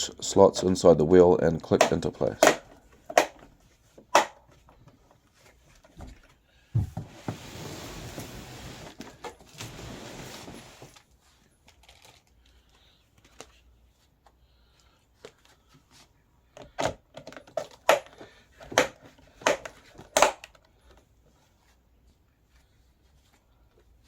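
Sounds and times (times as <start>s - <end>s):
plastic hubcaps snapping on: 1.7s - 3.5s, 4.1s - 4.6s, 16.6s - 20.7s.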